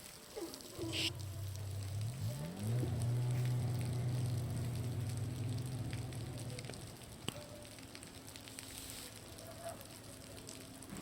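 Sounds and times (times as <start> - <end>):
bonfire crackling: 0.0 - 10.9
water dripping off a roof: 0.0 - 11.0
motor droning: 0.9 - 6.5.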